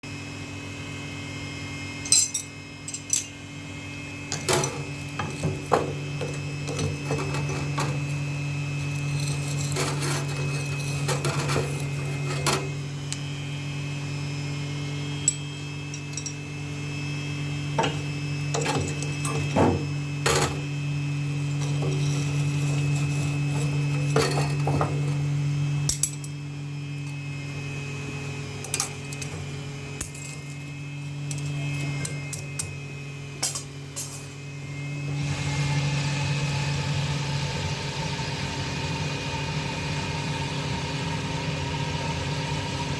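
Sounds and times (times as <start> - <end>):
tools clinking and knocking: 2.0 - 3.4, 15.3 - 16.4
machine motor humming: 2.9 - 42.9.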